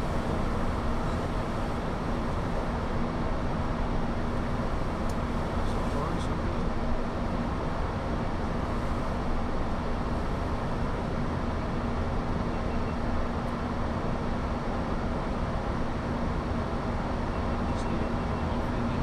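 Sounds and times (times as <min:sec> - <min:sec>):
constant low hum: 0:00.0 - 0:19.0
rush of air in cockpit: 0:00.0 - 0:19.0.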